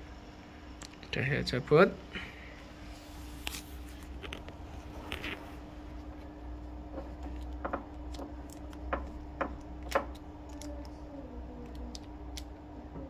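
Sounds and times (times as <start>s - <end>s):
steady electrical hum: 0.0s - 13.0s
plastic connectors clicking: 11.6s - 12.5s.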